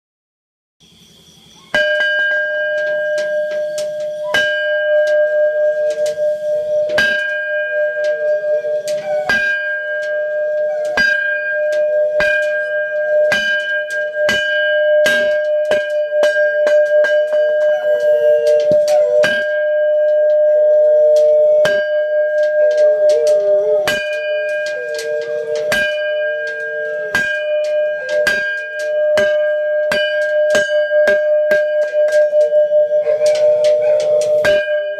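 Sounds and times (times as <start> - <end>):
temple bell ringing: 1.7 - 34.9.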